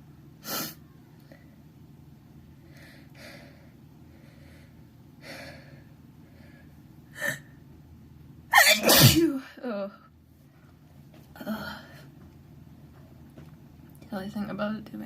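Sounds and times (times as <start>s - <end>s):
loud sneeze: 8.5s - 9.4s.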